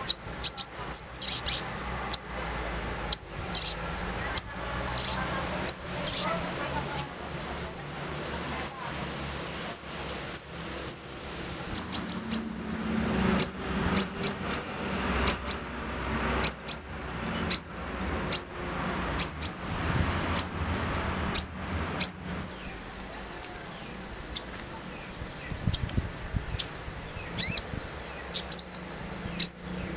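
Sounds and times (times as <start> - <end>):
bird sharp high chirps: 0.0 - 2.4, 3.1 - 6.3, 9.7 - 12.6, 13.4 - 14.7, 15.3 - 15.7, 16.4 - 16.9, 17.5 - 18.6, 19.2 - 19.6, 20.3 - 20.6, 21.4 - 22.2, 26.5 - 29.8.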